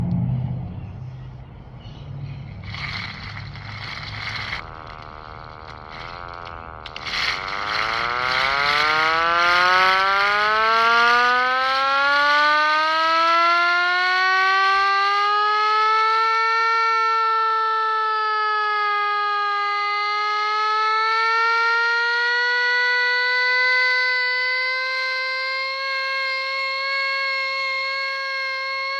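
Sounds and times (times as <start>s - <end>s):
low rumble: 0.0s - 8.3s
short burst of noise: 2.5s - 9.1s
air raid siren wailing: 2.6s - 28.9s.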